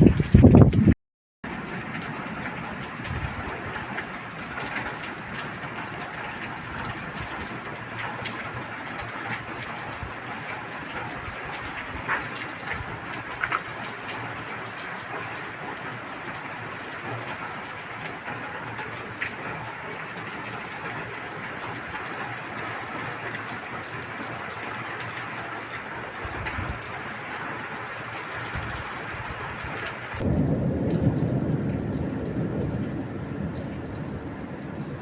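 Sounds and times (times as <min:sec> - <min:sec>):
steady rain falling: 0:00.0 - 0:35.0.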